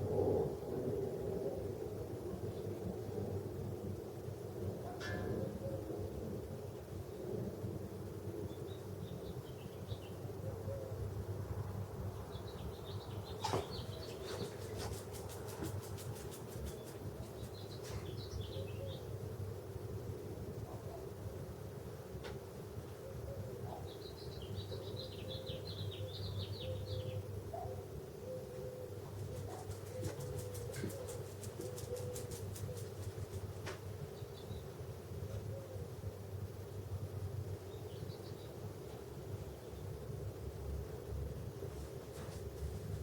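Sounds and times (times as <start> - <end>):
birds chirping: 12.4 - 19.0.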